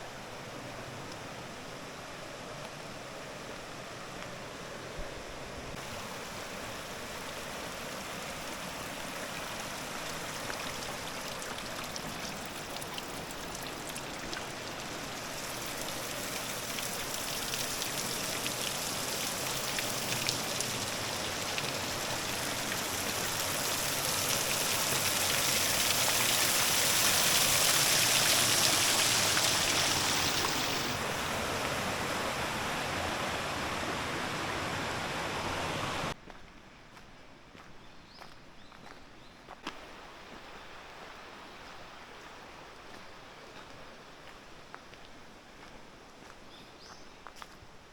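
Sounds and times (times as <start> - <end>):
stream rushing over rocks: 0.3 - 36.2, 39.7 - 46.4.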